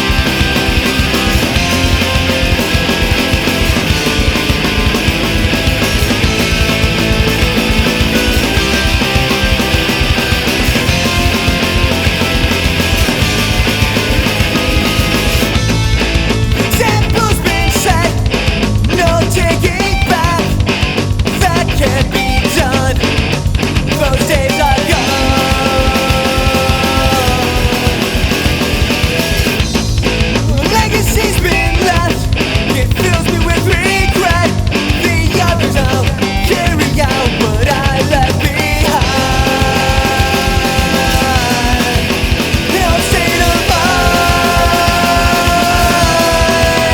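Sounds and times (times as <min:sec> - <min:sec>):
drums: 0:00.0 - 0:46.9
rock music with distorted guitars: 0:00.0 - 0:46.9
person singing: 0:16.6 - 0:23.2, 0:23.9 - 0:28.6, 0:30.5 - 0:46.9.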